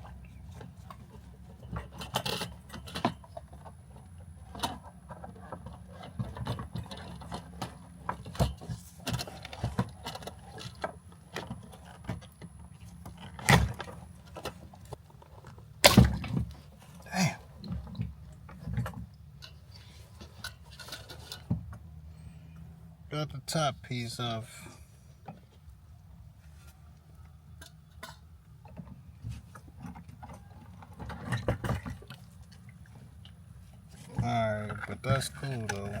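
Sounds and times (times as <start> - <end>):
knocks clicks and rustles: 0.0 - 21.9.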